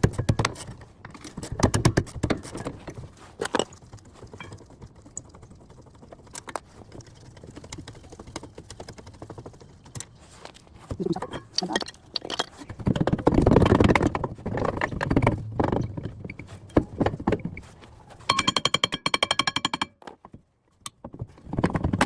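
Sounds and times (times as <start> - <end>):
ratchet clicking and clanking: 18.3 - 20.0.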